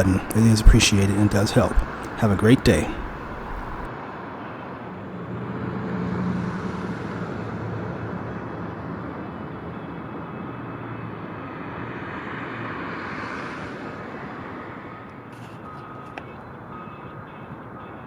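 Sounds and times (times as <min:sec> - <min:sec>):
street traffic rush: 0:00.0 - 0:03.9.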